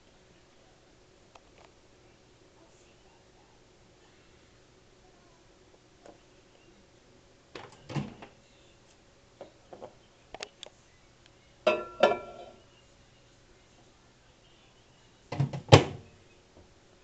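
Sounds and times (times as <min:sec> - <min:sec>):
microwave oven knocks: 0:15.3 - 0:16.0.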